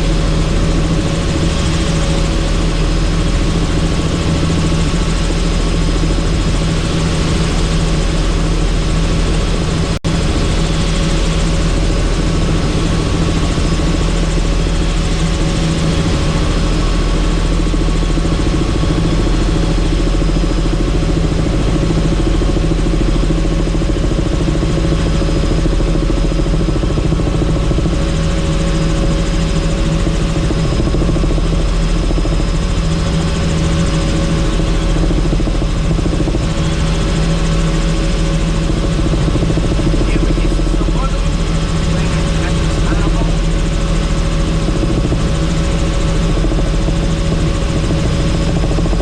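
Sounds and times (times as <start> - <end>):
helicopter rotor and engine drone: 0.0 - 49.0.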